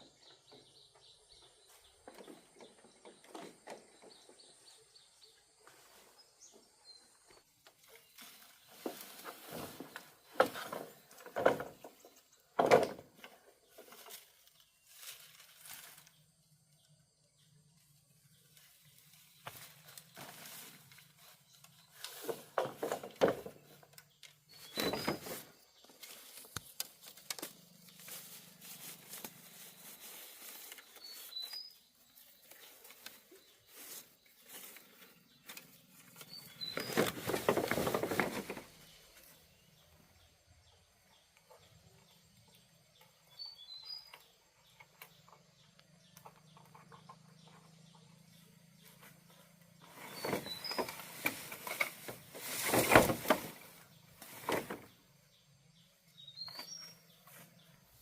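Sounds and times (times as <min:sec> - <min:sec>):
rustling and handling noise: 0:05.5 - 0:16.4, 0:18.4 - 0:39.7, 0:48.7 - 0:55.1
small bird chirping: 0:13.5 - 0:58.0.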